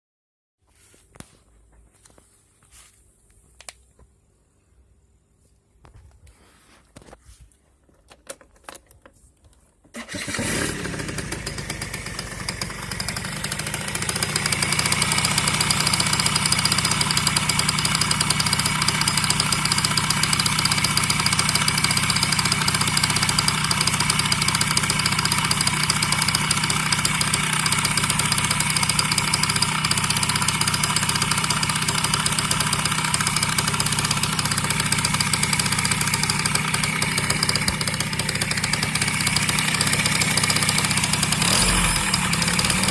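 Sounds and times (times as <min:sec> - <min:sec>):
scooter engine idling: 0:10.0 - 0:42.9.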